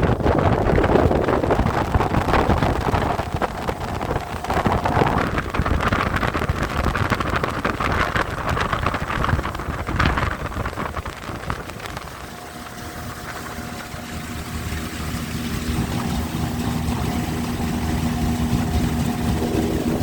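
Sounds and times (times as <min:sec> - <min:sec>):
outboard motor running: 0:00.0 - 0:20.0
wind buffeting microphone: 0:00.0 - 0:20.0.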